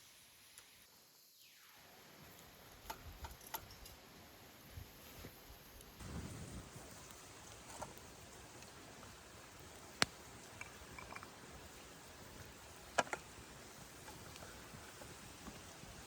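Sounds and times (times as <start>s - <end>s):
campfire crackling: 5.0s - 16.0s
campfire sharp pops: 6.0s - 16.0s.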